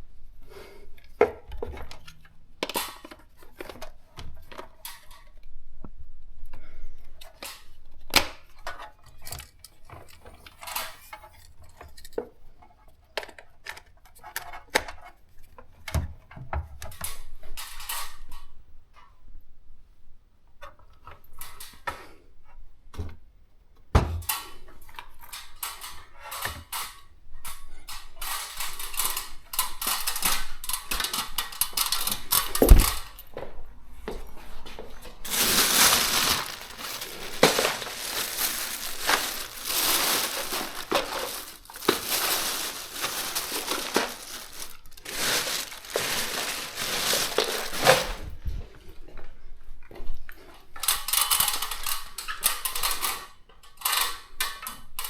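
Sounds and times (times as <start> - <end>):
rustling and scraping: 27.6 - 33.1, 34.0 - 48.6.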